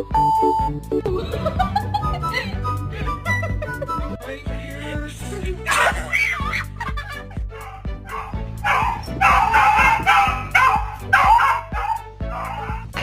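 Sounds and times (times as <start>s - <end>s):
background music: 0.0s - 13.0s
dog barking and yipping: 5.7s - 6.7s, 7.5s - 13.0s.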